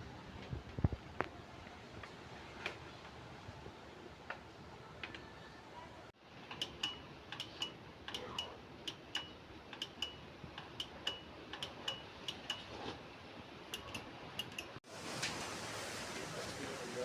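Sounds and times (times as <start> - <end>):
sharp metallic clicks: 6.4 - 12.9, 13.7 - 14.8.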